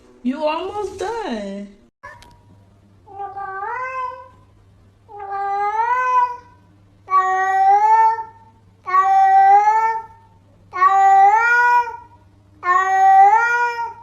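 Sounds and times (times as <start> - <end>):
cat meowing: 3.1 - 4.4, 5.1 - 10.1.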